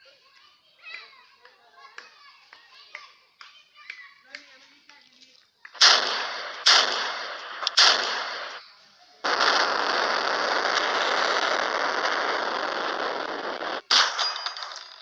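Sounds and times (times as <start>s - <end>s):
gunshots: 5.8s - 8.6s, 9.2s - 15.0s.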